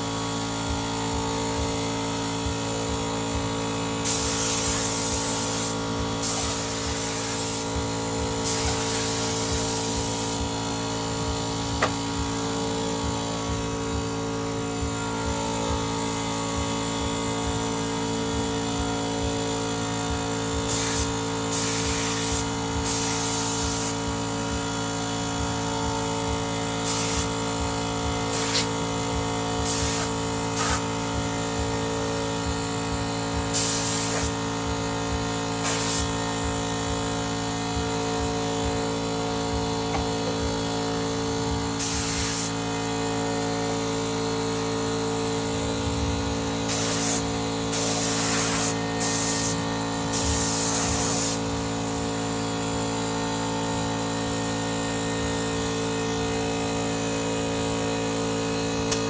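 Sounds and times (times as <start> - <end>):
air compressor running: 0.0 - 59.0
compressed air hissing blasts: 2.8 - 12.7, 20.6 - 24.4, 26.8 - 27.6, 28.2 - 28.9, 29.6 - 31.3, 33.4 - 34.8, 35.5 - 36.6, 41.7 - 43.0, 46.6 - 52.2.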